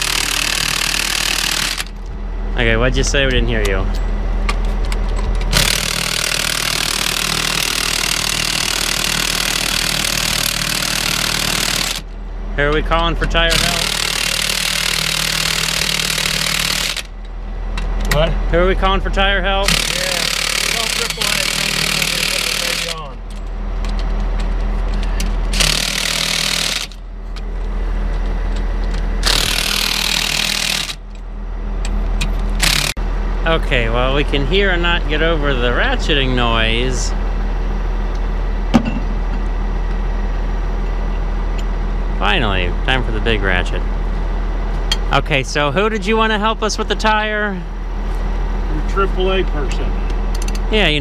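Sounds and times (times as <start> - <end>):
impact wrench running: 0.0 - 2.1, 4.6 - 12.2, 12.8 - 17.9, 19.6 - 31.2, 31.9 - 33.0
steady low hum: 0.0 - 51.0.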